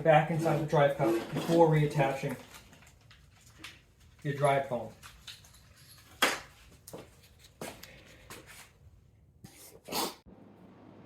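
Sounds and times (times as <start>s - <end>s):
light clicks and knocks of parts: 1.5s - 8.2s.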